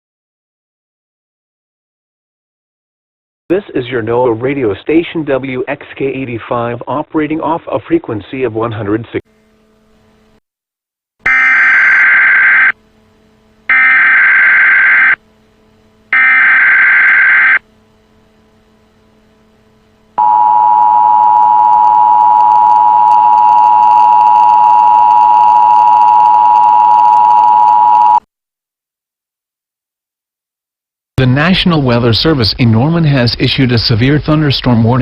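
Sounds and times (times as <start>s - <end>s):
two-pitch alarm tone: 11.2s - 12.8s, 13.7s - 15.2s, 16.1s - 17.7s, 20.2s - 28.2s
digital header data bursts: 16.2s - 17.6s.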